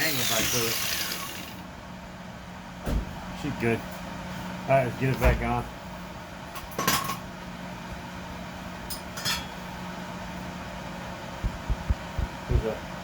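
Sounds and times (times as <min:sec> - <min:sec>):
steady low hum: 0:07.2 - 0:13.0.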